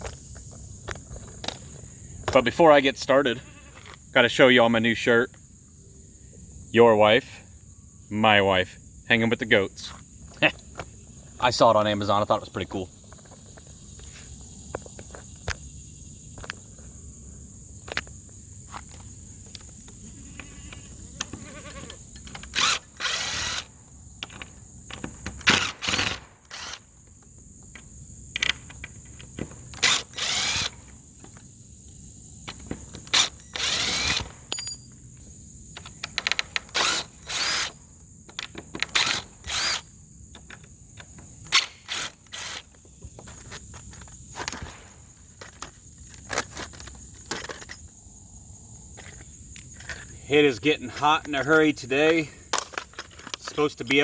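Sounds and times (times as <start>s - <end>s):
insects buzzing: 0.0s - 54.0s
cordless screw gun bursts: 22.4s - 23.7s, 25.4s - 26.9s, 29.8s - 30.8s, 33.0s - 34.4s, 36.4s - 37.8s, 38.8s - 39.9s, 41.4s - 42.7s.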